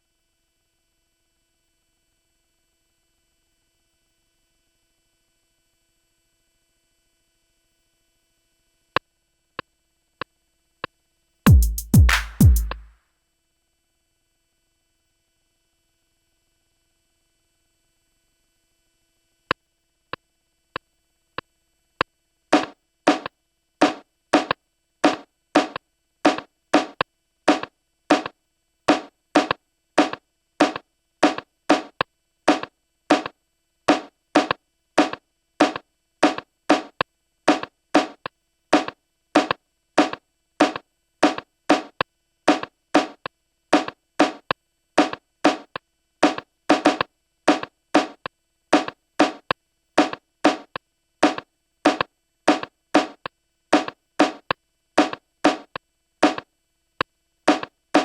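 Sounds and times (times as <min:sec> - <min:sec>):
looping drum sample hits: 0:11.5 - 0:12.9, 0:22.6 - 0:28.3, 0:28.9 - 0:31.9, 0:33.9 - 0:36.9, 0:37.5 - 0:38.2, 0:38.8 - 0:43.2, 0:43.8 - 0:48.2, 0:48.8 - 0:49.4, 0:50.0 - 0:53.2, 0:53.8 - 0:54.4, 0:57.5 - 0:58.0.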